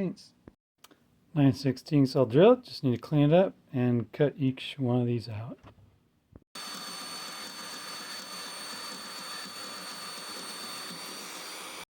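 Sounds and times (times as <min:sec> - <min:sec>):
power tool working steel: 0:06.6 - 0:11.9.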